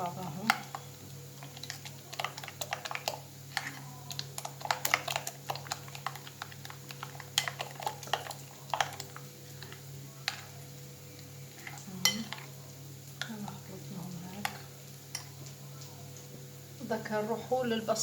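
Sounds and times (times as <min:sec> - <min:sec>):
utensil clicking against a bowl: 0:01.4 - 0:10.4.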